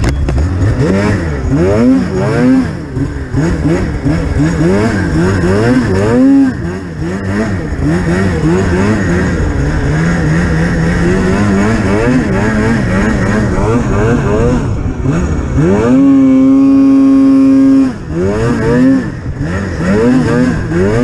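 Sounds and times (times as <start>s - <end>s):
snowmobile engine revving: 0.0s - 21.0s.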